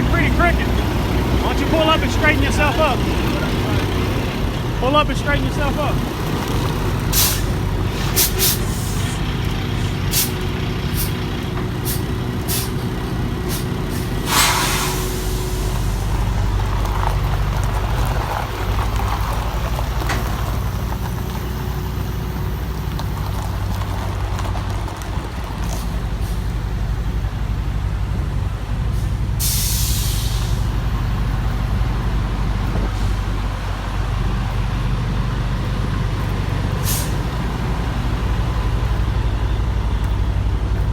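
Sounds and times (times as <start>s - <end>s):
diesel truck engine running: 0.0s - 40.9s
air brake hisses: 7.1s - 11.2s, 11.9s - 12.8s, 13.5s - 16.1s, 29.0s - 30.7s, 36.8s - 37.3s.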